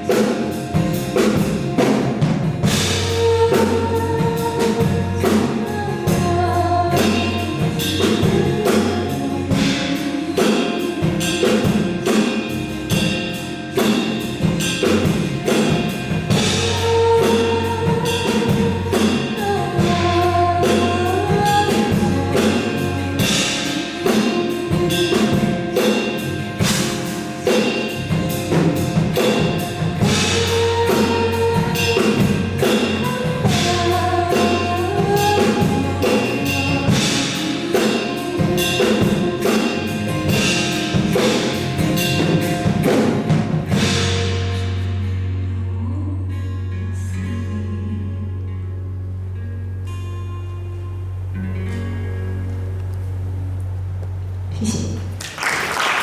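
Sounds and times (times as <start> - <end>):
live band playing: 0.0 - 46.0.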